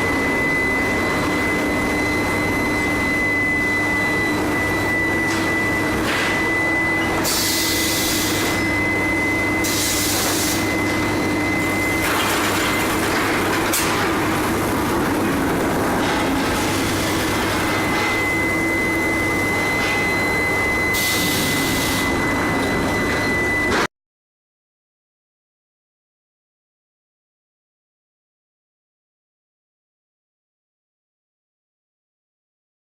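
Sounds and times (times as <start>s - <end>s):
high-pitched furnace whine: 0.0s - 23.9s
mechanical rumble and hum: 0.0s - 23.9s.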